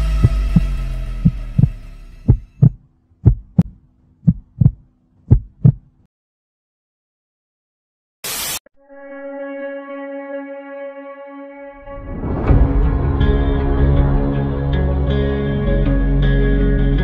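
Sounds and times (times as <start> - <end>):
music drone: 0.0 - 2.3, 8.8 - 16.6
heartbeat thumps: 0.2 - 5.9.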